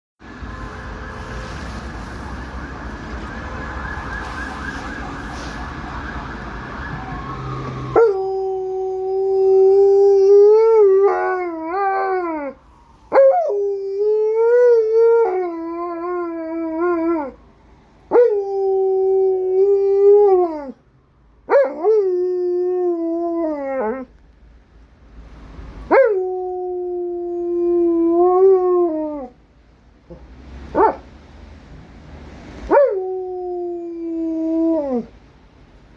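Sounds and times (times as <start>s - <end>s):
dog howling: 7.9s - 17.4s.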